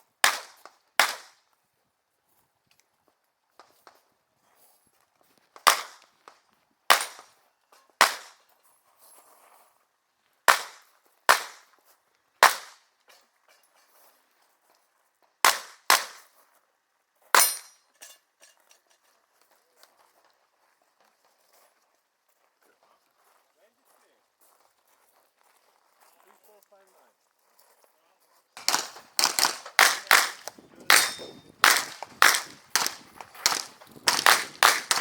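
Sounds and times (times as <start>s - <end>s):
revolver shots: 28.6s - 35.0s.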